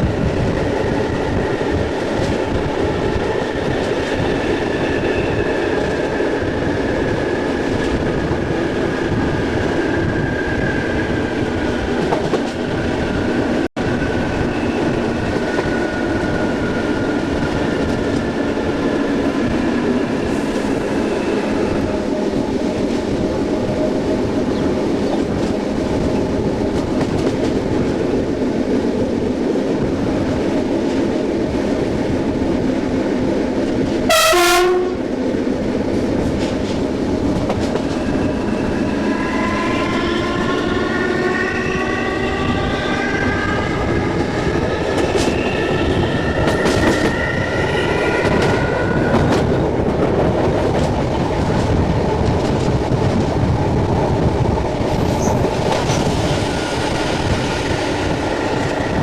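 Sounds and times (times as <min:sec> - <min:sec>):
wind on microphone: 0:00.0 - 0:34.1, 0:34.8 - 0:59.0
train rail rumble and clatter: 0:00.0 - 0:59.0
train horn blast: 0:34.1 - 0:35.1.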